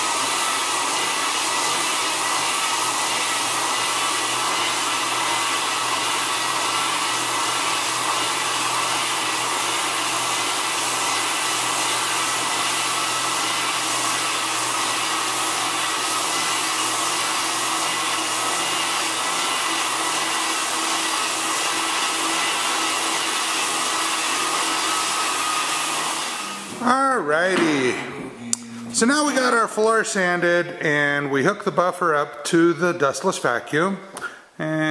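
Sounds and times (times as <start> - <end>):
vacuum motor whining: 0.0 - 26.9
floor edger sanding: 0.0 - 27.9.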